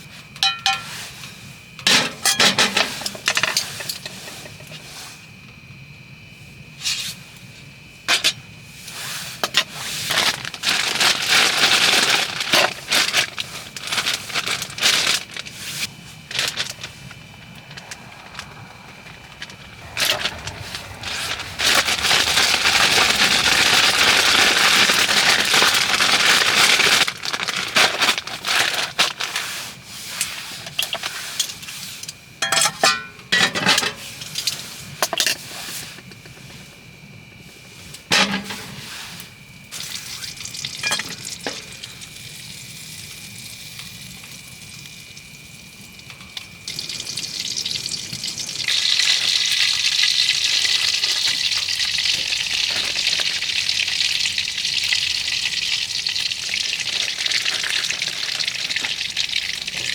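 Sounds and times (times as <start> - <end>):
utensils clinking on cookware: 0.4 - 1.1, 1.8 - 4.7, 32.4 - 34.1, 38.1 - 38.8, 40.8 - 41.8
food sizzling in a pan: 0.4 - 1.2, 46.6 - 59.9.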